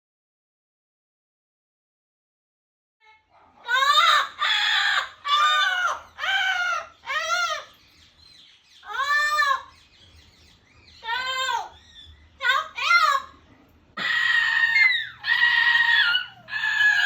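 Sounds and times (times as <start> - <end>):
parrot squawking loudly: 3.4 - 7.8, 14.0 - 17.0.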